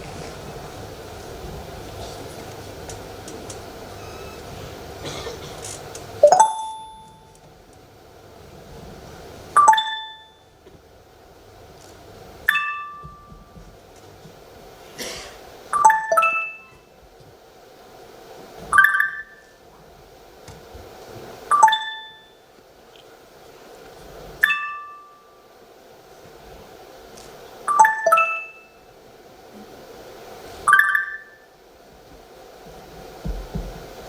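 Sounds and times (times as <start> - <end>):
electronic notification pings: 6.2 - 7.3, 9.6 - 10.4, 15.8 - 16.8, 27.7 - 28.6.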